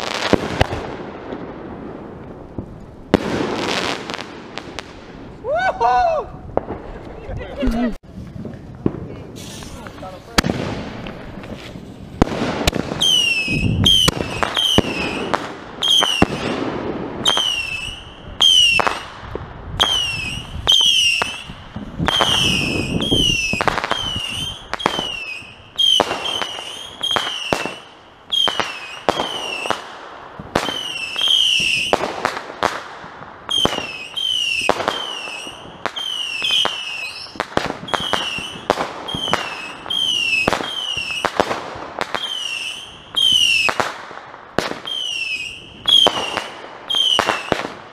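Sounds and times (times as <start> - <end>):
fireworks pop and falling whistle: 12.7 - 16.5, 19.8 - 29.8, 33.5 - 41.3, 44.8 - 47.6.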